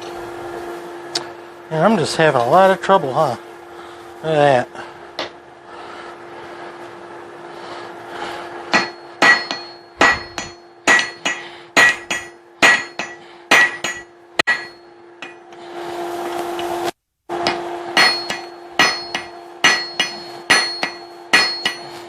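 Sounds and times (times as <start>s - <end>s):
steady hum: 0.0s - 22.0s
hammer striking steel on anvil: 8.7s - 15.6s, 17.3s - 22.0s.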